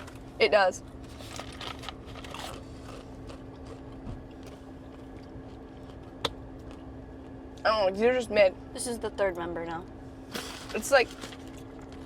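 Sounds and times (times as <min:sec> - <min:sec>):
steady low hum: 0:00.0 - 0:12.0
chewing crunchy nuts: 0:00.9 - 0:07.4.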